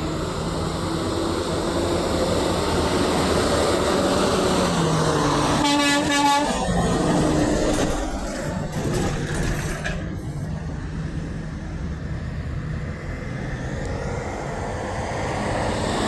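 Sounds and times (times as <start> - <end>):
truck air horn blast: 5.5 - 6.8.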